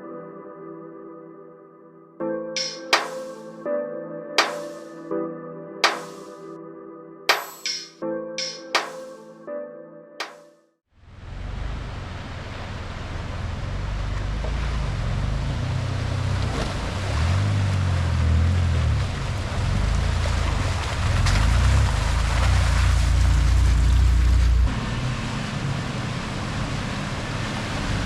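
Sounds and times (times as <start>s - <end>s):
engine rumbling: 11.1s - 28.0s.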